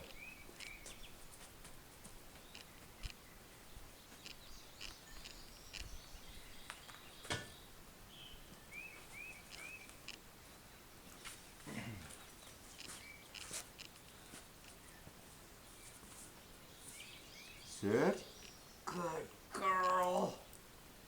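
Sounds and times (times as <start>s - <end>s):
bird chirping: 0.0s - 1.3s, 2.3s - 21.0s
faint clicks: 2.4s - 3.2s, 4.2s - 6.0s, 9.5s - 10.2s, 12.7s - 14.8s, 19.5s - 20.7s.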